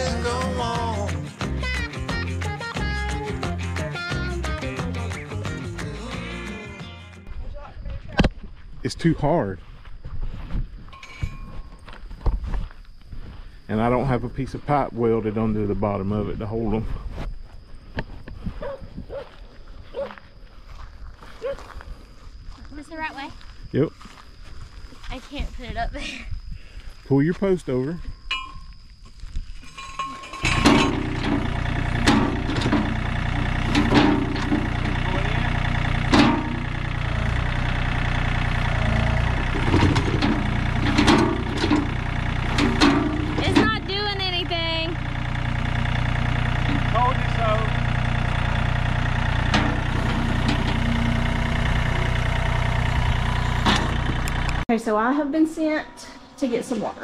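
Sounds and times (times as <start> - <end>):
tractor engine running: 0.0 - 7.4, 29.6 - 54.7
sharp metallic clanks: 10.9 - 11.9, 28.3 - 28.8, 29.6 - 36.8, 39.4 - 43.9, 49.4 - 51.2, 53.1 - 54.6.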